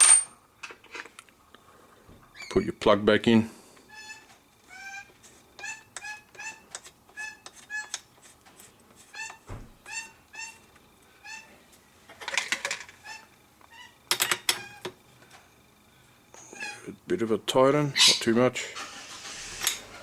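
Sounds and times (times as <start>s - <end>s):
high-pitched animal calls: 3.9s - 8.0s, 9.1s - 11.6s, 13.0s - 14.0s, 16.4s - 16.8s, 17.9s - 18.3s.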